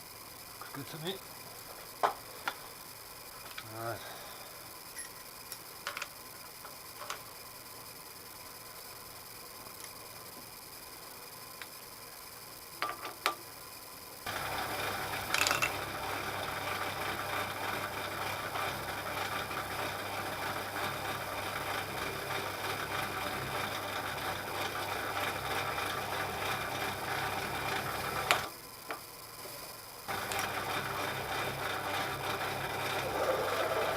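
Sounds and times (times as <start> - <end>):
milling machine gear whir: 14.3 - 28.8, 30.1 - 33.9.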